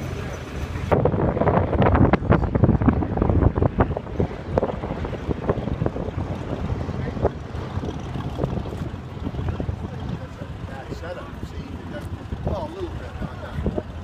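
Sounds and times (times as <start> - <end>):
low rumble: 0.0 - 14.0
wind buffeting microphone: 0.0 - 14.0.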